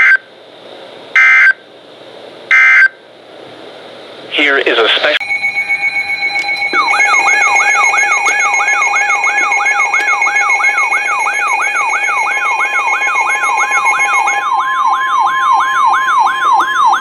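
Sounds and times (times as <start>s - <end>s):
steady high alarm tones: 5.0s - 17.0s
falling siren tone: 5.2s - 17.0s.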